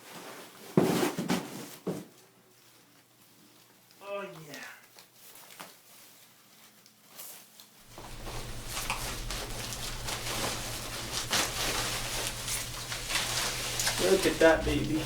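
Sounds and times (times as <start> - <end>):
packaging rustling and crinkling: 4.9 - 15.0
low hum: 7.9 - 15.0.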